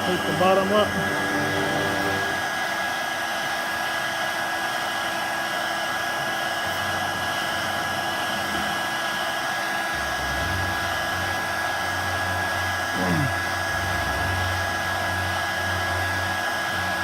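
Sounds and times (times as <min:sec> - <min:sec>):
heat gun blowing and whining: 0:00.0 - 0:03.1, 0:06.6 - 0:17.0.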